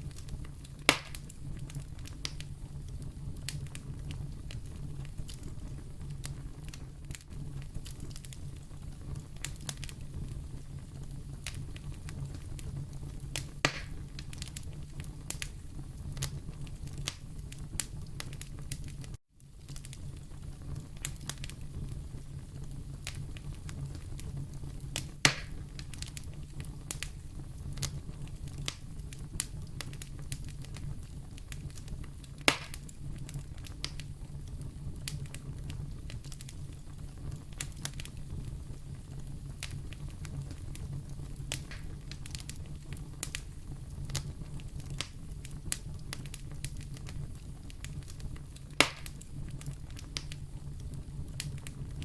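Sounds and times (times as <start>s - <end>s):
fire crackling: 0.0s - 52.0s
low fire rumble: 0.0s - 52.0s
loud sharp pops: 0.9s - 1.3s, 13.4s - 14.0s, 25.0s - 25.6s, 32.4s - 32.9s, 48.8s - 49.2s.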